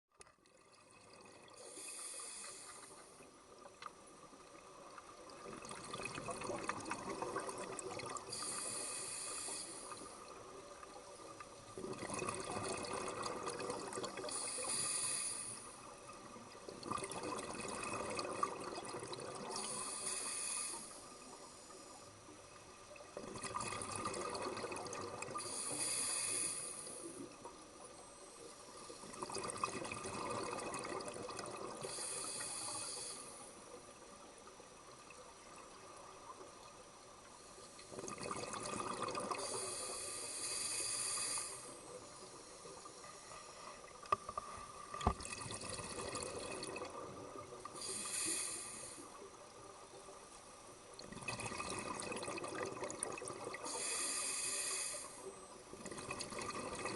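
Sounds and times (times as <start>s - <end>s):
diver breathing through regulator: 1.6s - 3.1s, 8.3s - 10.2s, 14.3s - 15.8s, 19.5s - 22.1s, 25.4s - 27.2s, 31.8s - 33.6s, 39.3s - 43.9s, 47.7s - 49.2s, 53.6s - 55.4s.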